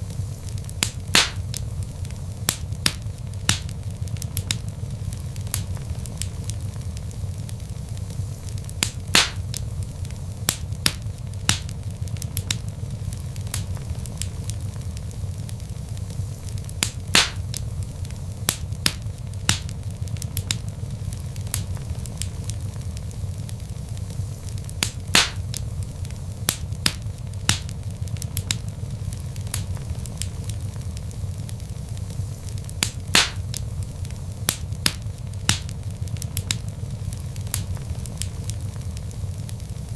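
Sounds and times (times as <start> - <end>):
fire crackling: 0.0 - 39.9
fire pops: 0.0 - 39.9
low rumble of flames: 0.0 - 39.9.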